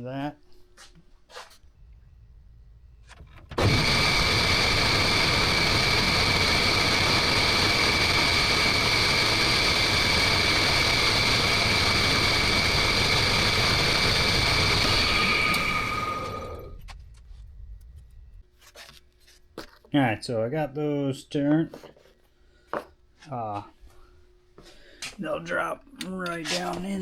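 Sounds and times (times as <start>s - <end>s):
lathe motor whining: 3.4s - 16.8s.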